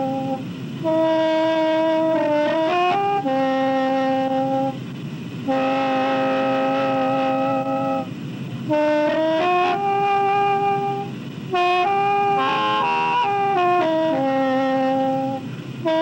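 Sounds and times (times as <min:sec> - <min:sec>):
bamboo mouth organ chords: 0:11.7 - 0:15.4.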